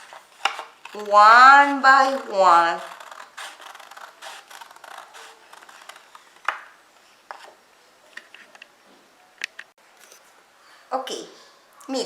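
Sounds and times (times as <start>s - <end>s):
scissors snipping paper: 0.0s - 6.2s
paper rustling: 0.0s - 6.7s.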